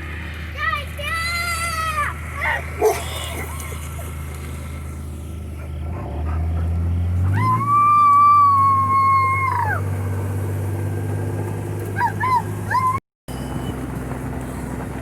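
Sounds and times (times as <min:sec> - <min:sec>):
engine running steadily: 0:00.0 - 0:15.0
long howl sliding down: 0:07.2 - 0:10.0.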